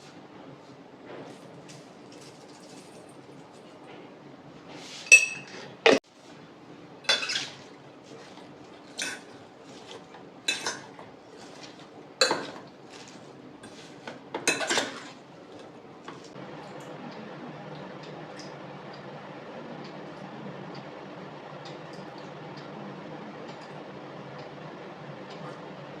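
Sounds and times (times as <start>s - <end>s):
dishes and cutlery clinking: 5.0s - 6.0s, 7.1s - 7.7s, 8.9s - 15.7s.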